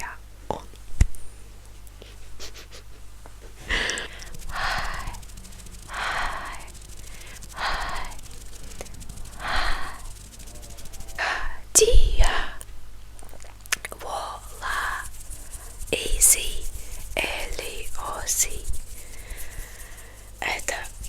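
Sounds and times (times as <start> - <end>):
slow breathy exhalations: 3.6 - 11.6.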